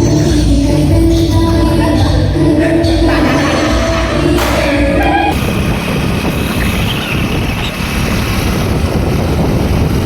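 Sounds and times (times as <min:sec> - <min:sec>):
moving vehicle running: 0:00.0 - 0:10.0
wind noise on microphone: 0:02.8 - 0:10.0.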